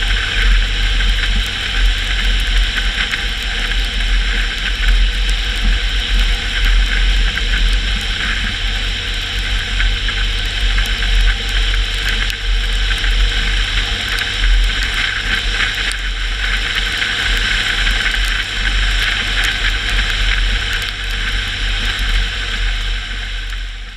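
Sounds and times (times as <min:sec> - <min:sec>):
car engine and road rumble: 0:00.0 - 0:23.9.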